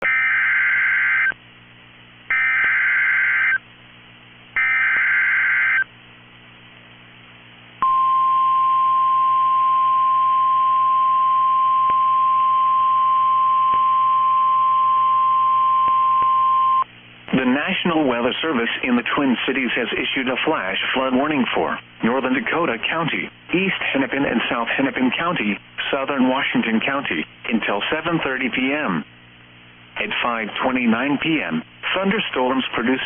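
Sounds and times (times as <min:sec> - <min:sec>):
steady alarm tone: 0:02.3 - 0:03.6, 0:04.6 - 0:05.9.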